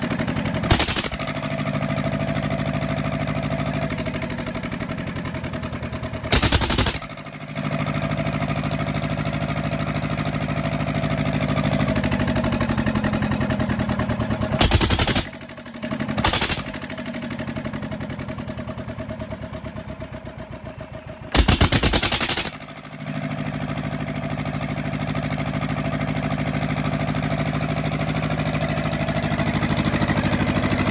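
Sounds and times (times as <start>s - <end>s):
diesel engine running: 0.0s - 30.9s
short loud bursts: 0.7s - 1.4s, 6.3s - 7.2s, 14.6s - 15.4s, 16.2s - 16.8s, 21.4s - 22.6s.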